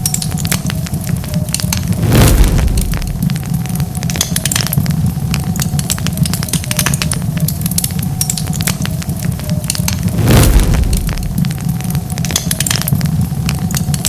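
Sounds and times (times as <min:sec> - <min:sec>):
wood fire crackling and popping: 0:00.0 - 0:14.0
rush of noise: 0:01.8 - 0:03.7, 0:09.9 - 0:12.0.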